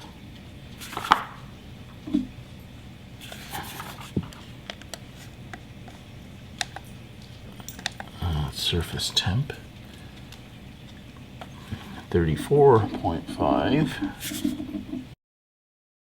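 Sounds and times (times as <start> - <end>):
low steady hum: 0.0 - 15.2
clicks of plastic gadgets handled: 6.6 - 6.9.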